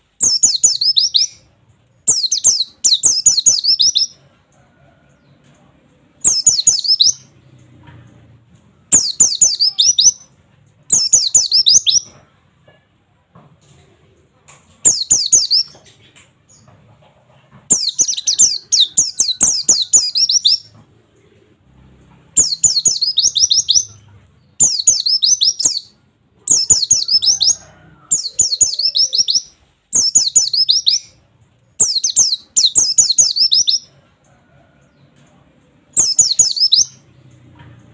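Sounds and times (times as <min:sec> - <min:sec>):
white-eye bird singing: 0:00.0 - 0:04.2, 0:06.2 - 0:07.4, 0:08.9 - 0:10.3, 0:10.9 - 0:12.2, 0:14.8 - 0:16.7, 0:17.7 - 0:20.8, 0:22.3 - 0:31.2, 0:31.8 - 0:33.9, 0:35.9 - 0:37.2.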